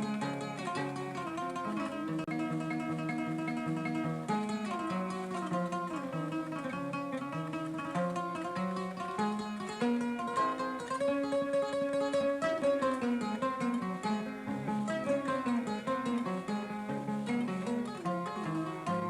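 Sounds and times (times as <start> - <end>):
harp-lute plucked melody: 0.0 - 19.0.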